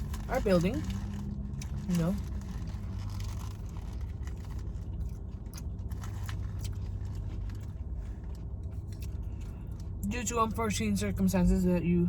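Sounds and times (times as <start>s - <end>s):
low hum inside car: 0.0s - 12.0s
person chewing food: 0.9s - 10.0s.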